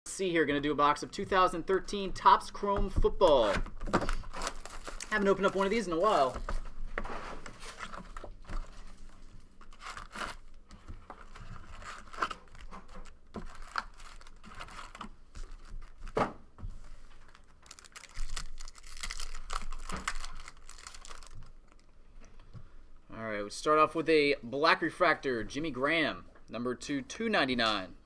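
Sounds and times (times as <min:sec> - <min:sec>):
packaging tearing and crinkling: 0:03.3 - 0:06.7, 0:07.4 - 0:16.2, 0:17.2 - 0:21.9.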